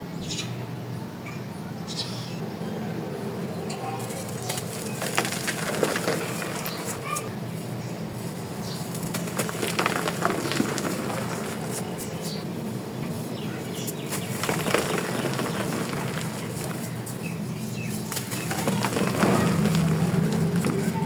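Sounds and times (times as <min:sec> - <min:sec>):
chalk crumbling and crunching: 0:04.0 - 0:07.2, 0:08.2 - 0:21.0.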